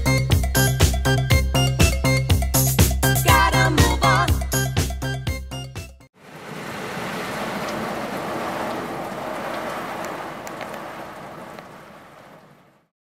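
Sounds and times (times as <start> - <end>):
water spraying onto car: 6.2 - 13.0.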